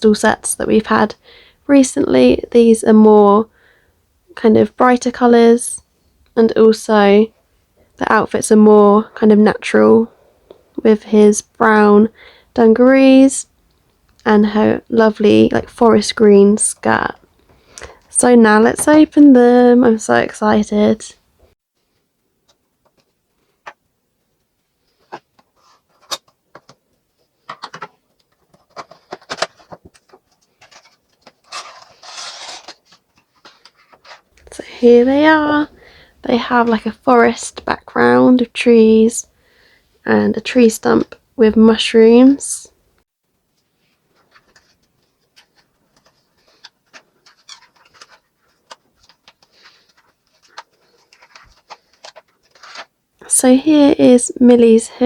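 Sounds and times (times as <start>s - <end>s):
packaging clicks and rustles: 25.0s - 34.4s, 44.0s - 53.0s
packaging crackling: 44.2s - 53.0s.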